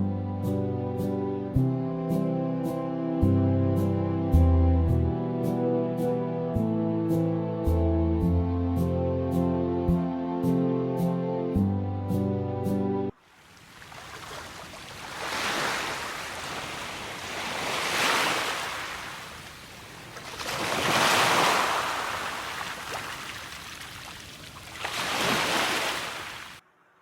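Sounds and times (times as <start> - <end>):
ocean waves washing in: 13.2 - 26.6.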